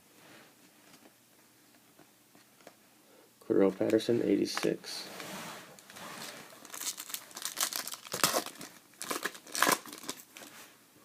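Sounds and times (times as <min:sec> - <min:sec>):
foil wrapper crinkling and tearing: 0:06.2 - 0:10.5.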